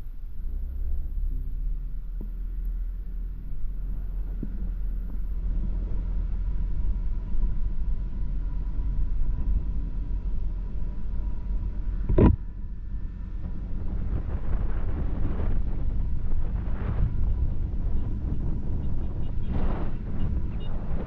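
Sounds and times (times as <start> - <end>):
vehicle rumble on road: 0.0 - 21.0
short thump: 12.1 - 12.5.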